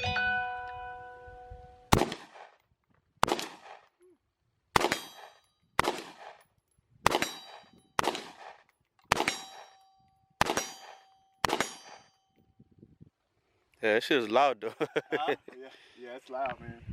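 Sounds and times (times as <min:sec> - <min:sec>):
loud gunshots: 0:01.9 - 0:02.6, 0:03.2 - 0:03.8, 0:04.7 - 0:06.4, 0:07.0 - 0:09.6, 0:10.4 - 0:12.1.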